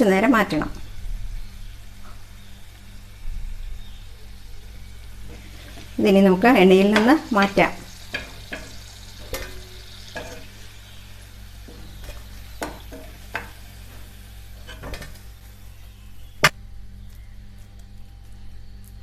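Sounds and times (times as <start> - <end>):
hot oil sizzling: 0.0 - 16.6.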